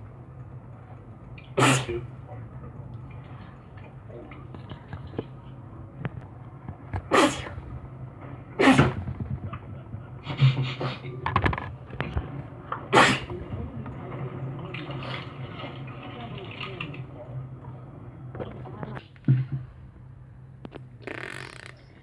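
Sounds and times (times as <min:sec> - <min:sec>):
person sneezing: 0:01.6 - 0:02.0, 0:07.1 - 0:07.6.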